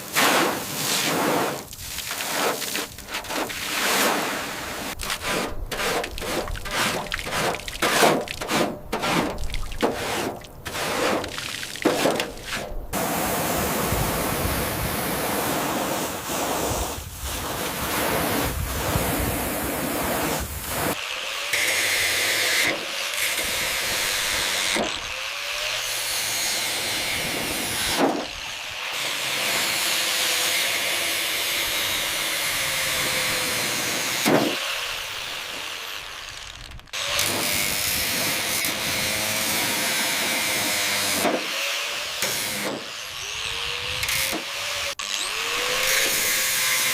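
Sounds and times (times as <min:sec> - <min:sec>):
power tool motor whining: 0:38.6 - 0:46.9.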